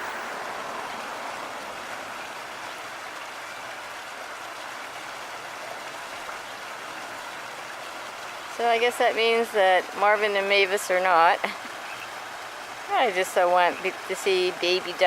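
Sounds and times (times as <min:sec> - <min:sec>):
small waterfall rushing: 0:00.0 - 0:15.0.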